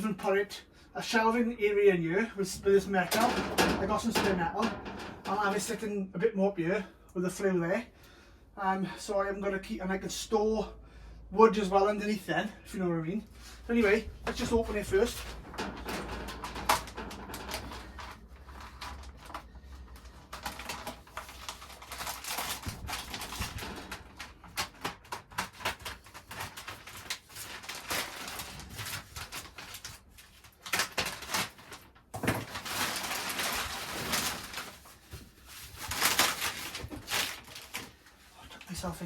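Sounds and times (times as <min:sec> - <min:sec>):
packaging rustling and tearing: 0:13.5 - 0:38.8.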